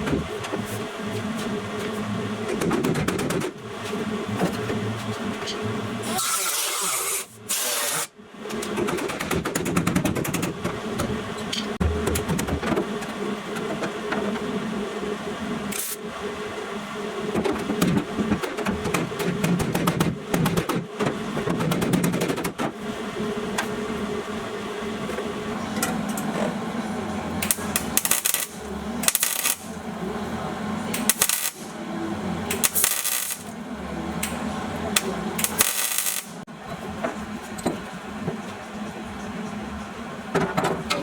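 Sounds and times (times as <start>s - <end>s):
steady background hum: 8.1s - 41.0s
power tool bursts: 27.4s - 29.7s, 31.0s - 31.7s, 32.6s - 33.5s, 35.4s - 36.4s.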